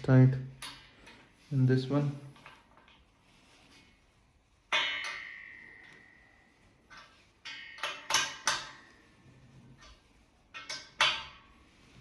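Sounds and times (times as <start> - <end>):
metallic knocks and clinks: 4.7 - 6.3, 6.9 - 9.0
metal clang ringing: 4.7 - 9.1.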